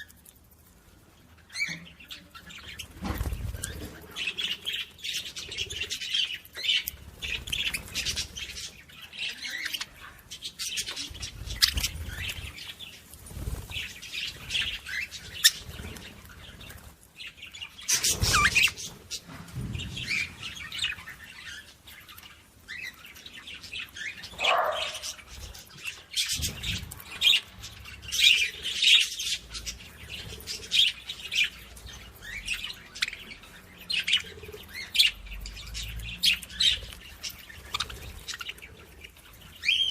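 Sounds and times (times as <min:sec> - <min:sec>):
small birds chirping: 0:00.0 - 0:39.9
low thumps: 0:19.3 - 0:20.7.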